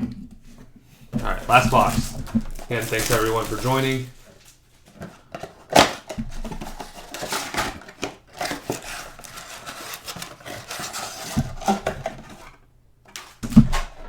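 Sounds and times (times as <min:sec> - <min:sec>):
trading cards rustling: 0:01.2 - 0:12.5.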